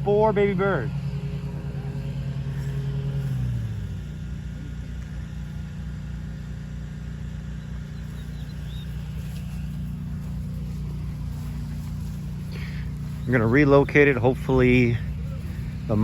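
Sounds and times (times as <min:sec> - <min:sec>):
low mechanical rumble: 0:00.0 - 0:16.0
baby birds chirping: 0:07.6 - 0:16.0.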